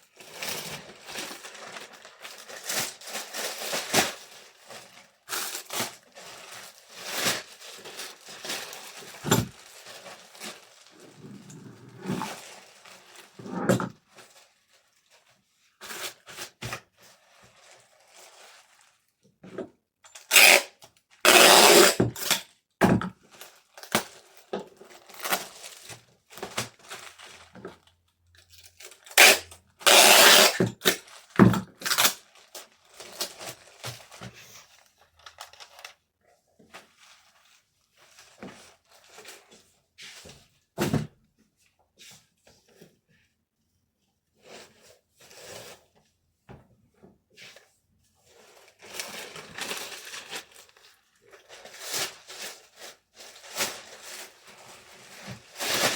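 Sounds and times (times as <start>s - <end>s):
packaging rustling and tearing: 0.2s - 19.1s, 23.1s - 36.0s, 36.6s - 39.7s, 48.3s - 55.9s.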